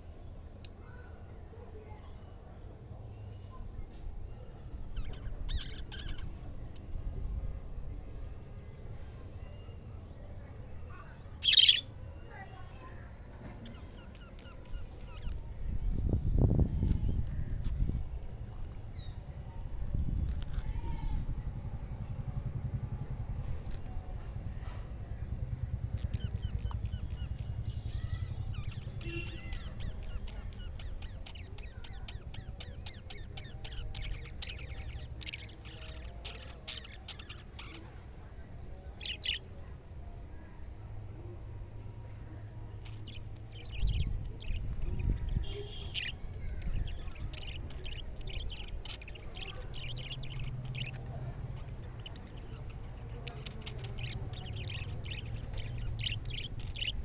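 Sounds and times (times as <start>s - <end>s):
budgerigars chattering: 11.4s - 11.9s, 25.8s - 37.9s, 38.9s - 39.4s, 42.8s - 57.0s
steady low rumble: 14.8s - 39.4s, 40.3s - 45.5s, 46.1s - 57.0s
loud high bird call: 27.4s - 29.9s.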